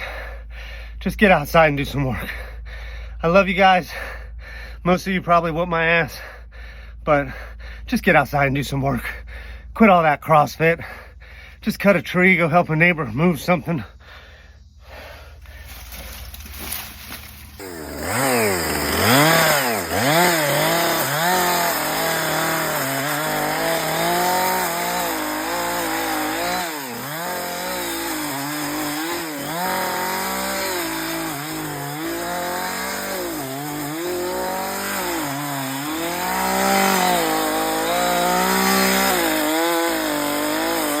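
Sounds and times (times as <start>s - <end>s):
chainsaw cutting wood: 15.6s - 41.0s.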